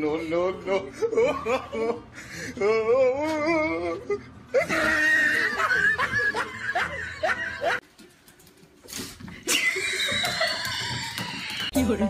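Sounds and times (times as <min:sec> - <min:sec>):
person laughing: 0:00.7 - 0:07.8, 0:09.4 - 0:11.6.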